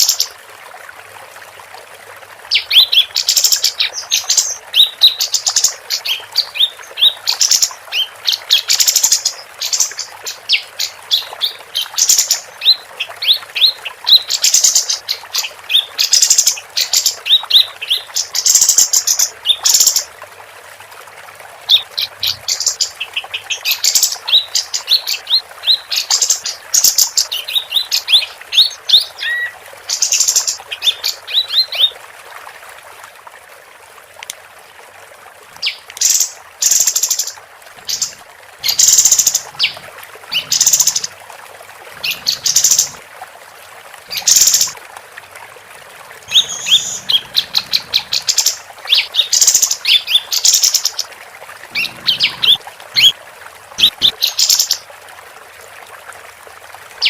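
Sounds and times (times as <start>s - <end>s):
bird chirping: 46.3s - 50.6s.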